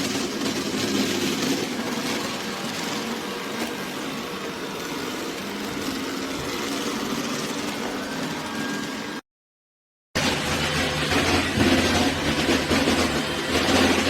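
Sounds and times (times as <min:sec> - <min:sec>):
robot vacuum cleaner humming: 0:00.0 - 0:09.2.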